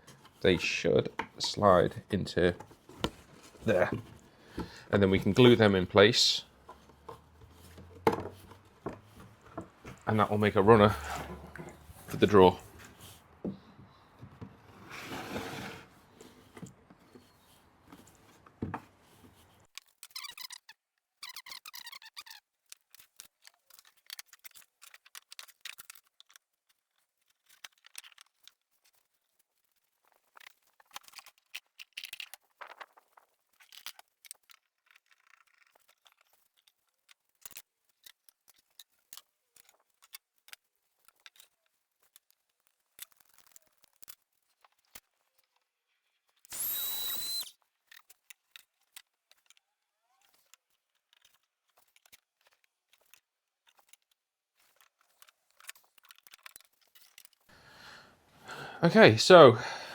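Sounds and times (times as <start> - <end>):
high-pitched squeaking scrape: 46.5 - 47.5.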